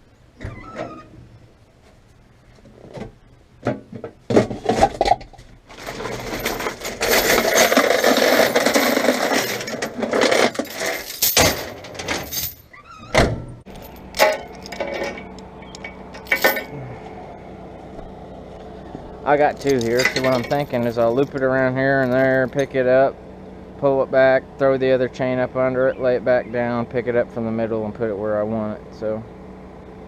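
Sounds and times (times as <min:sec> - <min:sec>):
metal chains rattling and clanking: 0:05.7 - 0:13.0, 0:13.7 - 0:16.8, 0:19.4 - 0:22.9.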